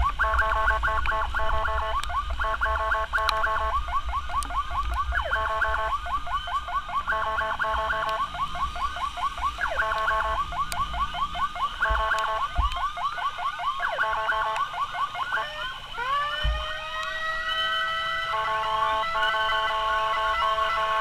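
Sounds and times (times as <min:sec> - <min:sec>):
ambulance siren: 0:00.0 - 0:21.0.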